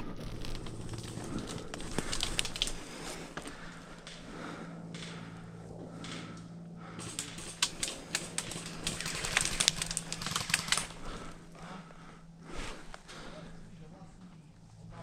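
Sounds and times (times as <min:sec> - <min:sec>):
airsoft gunfire: 0:07.0 - 0:11.0.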